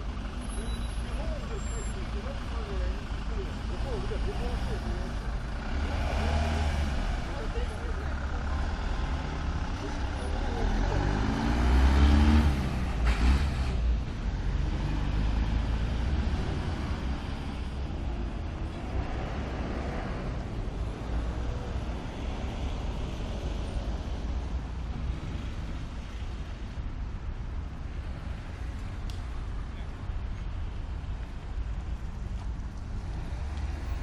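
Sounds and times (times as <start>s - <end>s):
traffic rumble: 0.0s - 34.0s
vehicle engine passing: 1.1s - 24.4s.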